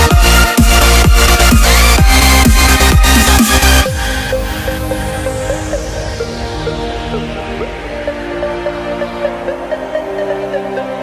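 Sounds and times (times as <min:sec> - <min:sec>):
held synth chords: 0:00.0 - 0:11.0
falling hissing sweep: 0:02.2 - 0:09.4.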